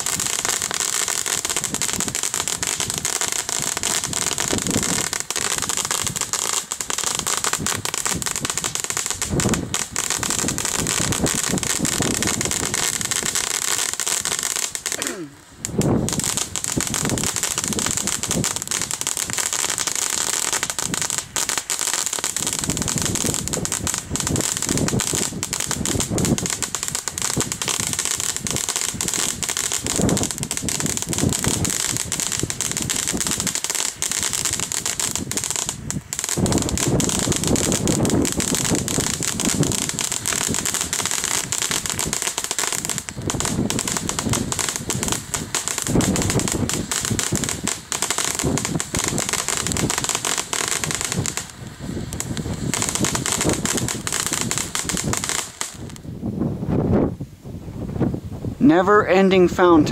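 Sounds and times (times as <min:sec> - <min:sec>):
fountain firework crackling: 0:00.0 - 0:56.2.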